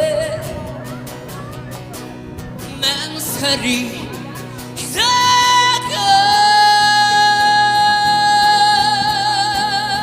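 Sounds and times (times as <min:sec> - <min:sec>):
person singing a long high note: 0:03.0 - 0:10.0.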